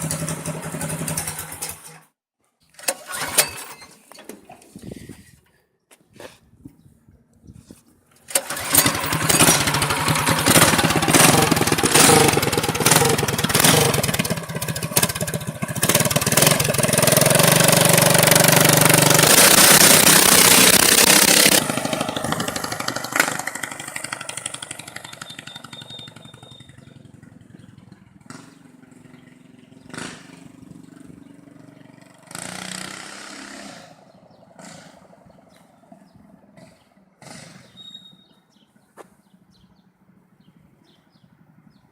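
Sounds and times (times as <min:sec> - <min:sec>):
go-kart engine revving: 0:00.0 - 0:02.1, 0:02.8 - 0:03.9, 0:08.3 - 0:37.9.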